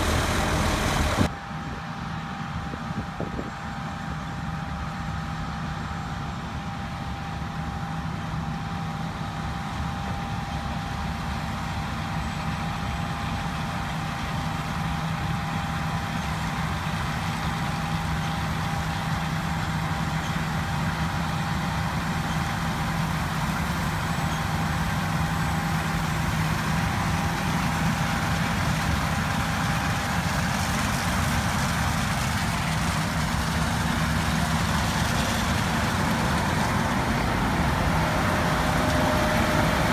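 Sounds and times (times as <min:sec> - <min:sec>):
combine harvester engine drone: 0:00.0 - 0:39.9.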